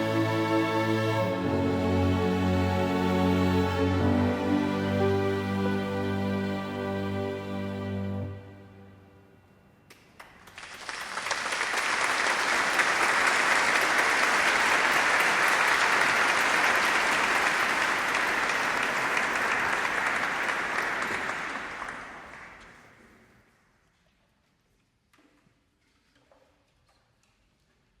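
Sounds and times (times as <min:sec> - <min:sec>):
crowd applauding: 0:10.2 - 0:23.0.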